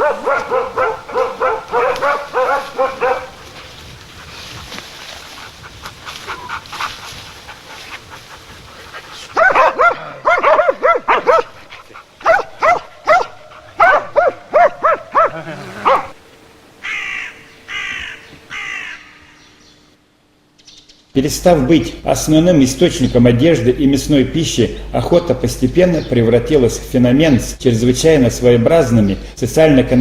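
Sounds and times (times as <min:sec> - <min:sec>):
dog barking: 0:00.0 - 0:03.6, 0:09.2 - 0:16.2.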